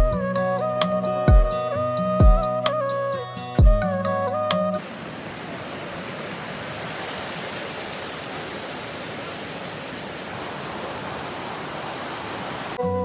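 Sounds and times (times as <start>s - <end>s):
steady rushing noise: 4.8s - 12.8s.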